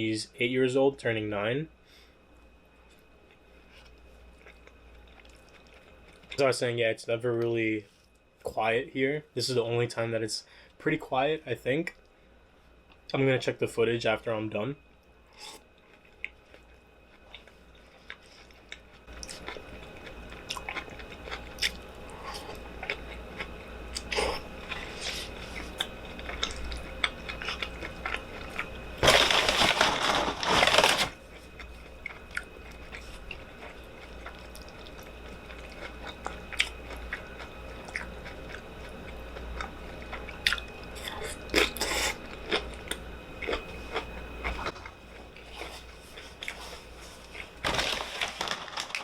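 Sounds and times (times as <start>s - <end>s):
chewing and biting: 15.9s - 48.9s.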